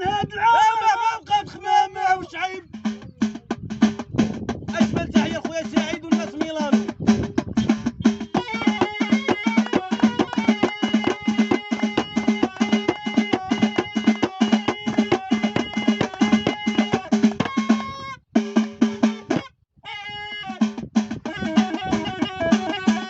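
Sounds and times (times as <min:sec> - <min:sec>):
rapid folk drumming: 0:02.7 - 0:19.6, 0:20.5 - 0:23.0
held melody line: 0:08.0 - 0:18.2, 0:21.3 - 0:23.0.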